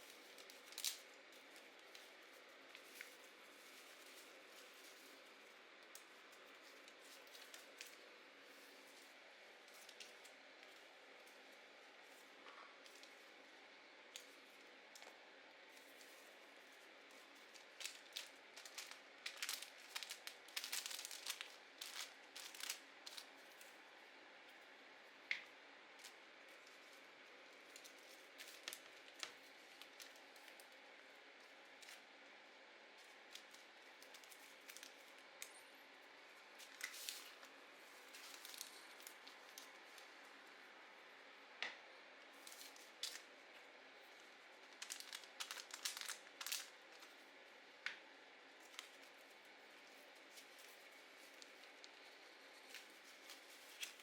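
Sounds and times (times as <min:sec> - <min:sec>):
paper rustling: 0:15.7 - 0:23.6, 0:36.6 - 0:40.1, 0:44.7 - 0:47.2, 0:48.6 - 0:54.0.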